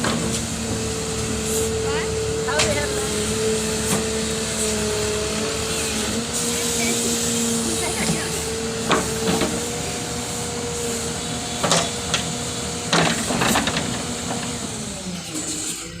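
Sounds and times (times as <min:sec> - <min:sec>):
diesel engine running with whine: 0:00.0 - 0:16.0.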